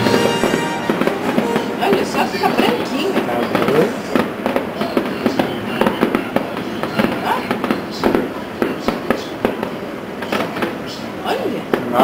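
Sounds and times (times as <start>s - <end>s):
fireworks bangs and pops: 0.0s - 11.0s, 11.6s - 12.0s.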